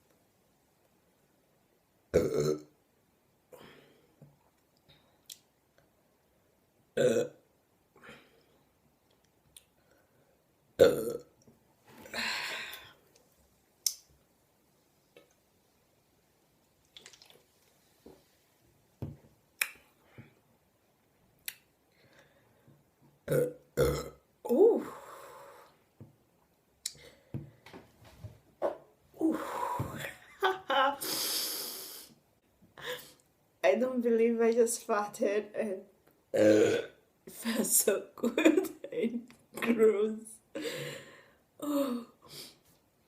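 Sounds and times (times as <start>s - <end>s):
woman burping loudly: 2.2s - 2.7s, 7.0s - 7.4s, 10.8s - 11.3s, 23.3s - 24.9s, 36.3s - 37.0s.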